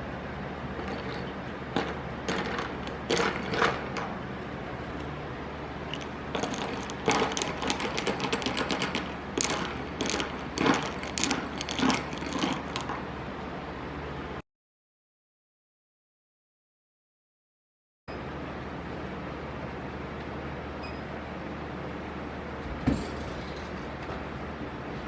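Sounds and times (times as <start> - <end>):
steady low hum: 0.0 - 14.4
small hard objects clicking: 5.9 - 13.0.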